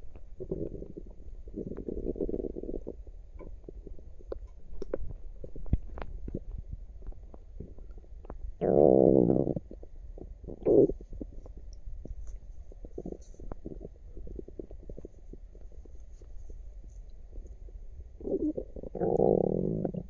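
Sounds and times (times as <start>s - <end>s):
stomach gurgling: 0.0s - 20.0s.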